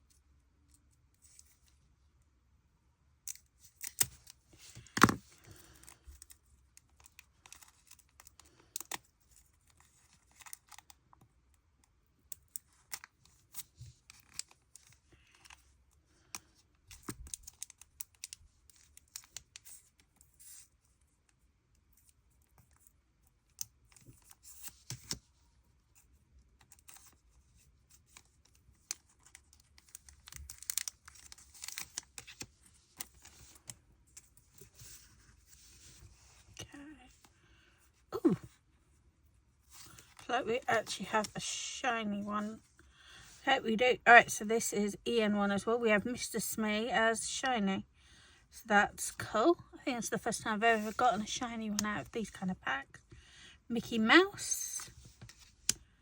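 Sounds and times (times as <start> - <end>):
plastic wrapper crinkling: 28.1 - 33.7.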